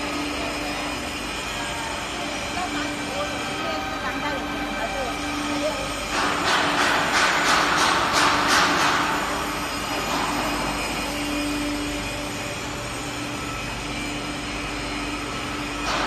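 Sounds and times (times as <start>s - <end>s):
conveyor belt mechanical hum: 0.0s - 16.0s
rhythmic clatter: 5.0s - 12.1s.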